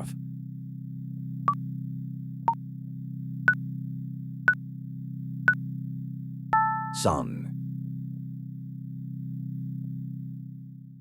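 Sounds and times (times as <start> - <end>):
countdown timer beeping: 6.6 - 7.2.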